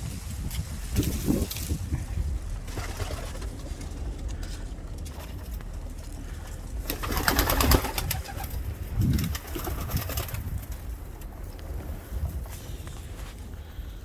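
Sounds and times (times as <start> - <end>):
wings clattering and rustling: 0.0 - 13.9
pigeons cooing: 2.2 - 10.8.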